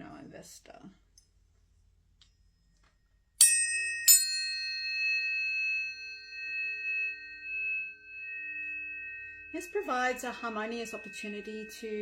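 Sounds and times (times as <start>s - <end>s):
tuning forks ringing: 3.4s - 12.0s.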